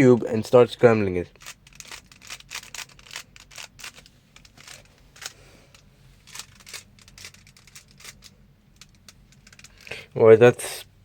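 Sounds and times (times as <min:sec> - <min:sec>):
plastic cube clicking: 0:01.4 - 0:05.3.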